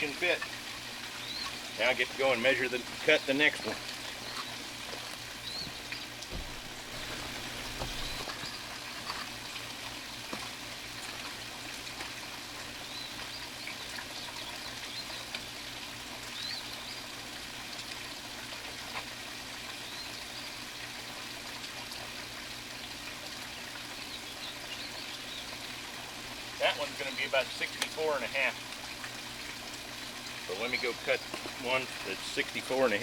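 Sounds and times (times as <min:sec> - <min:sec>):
trickle of running water: 0:00.0 - 0:33.0.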